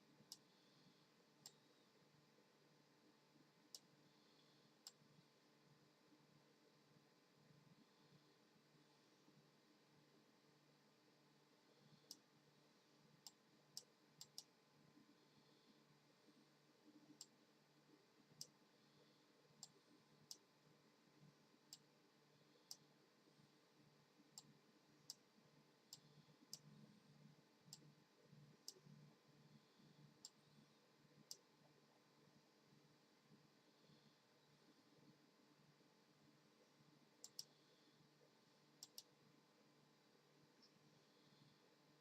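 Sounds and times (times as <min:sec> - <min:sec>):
faint sharp clicks: 0:00.3 - 0:00.5, 0:13.2 - 0:14.5, 0:19.6 - 0:20.5, 0:25.9 - 0:26.8, 0:28.6 - 0:29.0, 0:37.2 - 0:37.7, 0:38.8 - 0:39.2.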